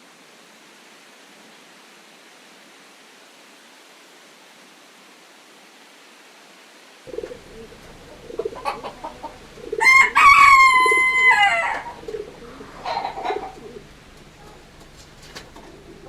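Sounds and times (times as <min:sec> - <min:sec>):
rooster crowing: 0:07.1 - 0:16.0
soft low bird calls: 0:07.1 - 0:16.0.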